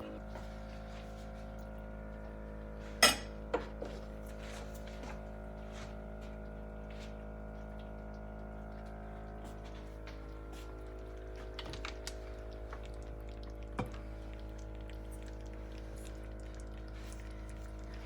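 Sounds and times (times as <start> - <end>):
background hum: 0.0 - 18.0
dishes and cutlery clinking: 3.0 - 3.8.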